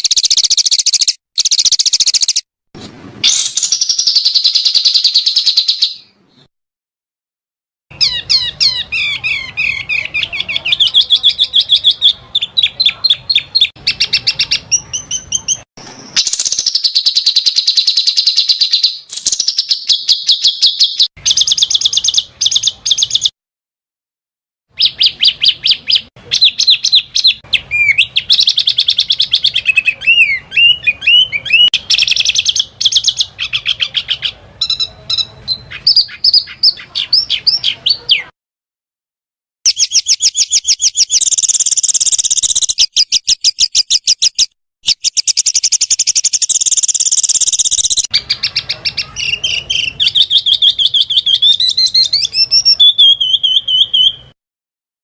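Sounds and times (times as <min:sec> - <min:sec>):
songbirds trilling and chattering: 0:07.9 - 0:23.3, 0:24.8 - 0:38.3, 0:45.1 - 0:54.3.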